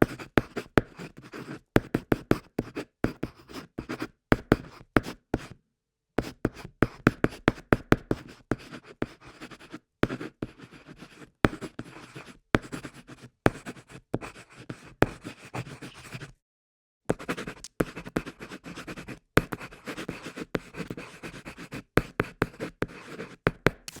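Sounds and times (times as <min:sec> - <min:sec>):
pencil scratching on paper: 0:00.1 - 0:05.5, 0:06.2 - 0:16.4, 0:17.1 - 0:24.0.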